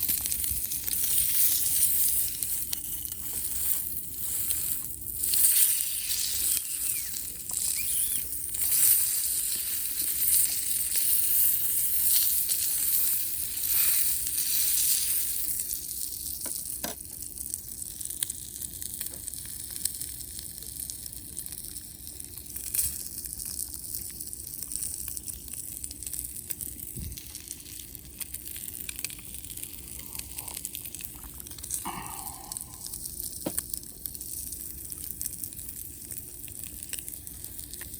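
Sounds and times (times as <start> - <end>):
campfire crackling and hissing: 0.0 - 37.9.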